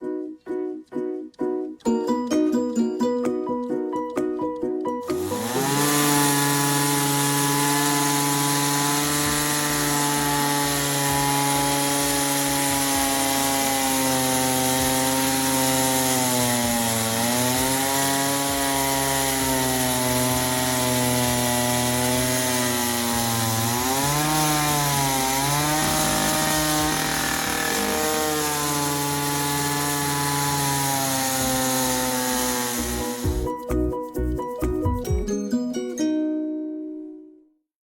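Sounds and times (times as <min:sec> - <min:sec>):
ring saw cutting concrete: 0:05.0 - 0:33.5.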